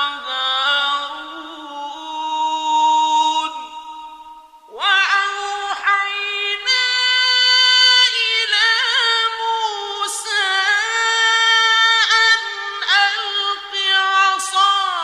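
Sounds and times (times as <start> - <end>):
man reciting melodically: 0.0 - 15.0.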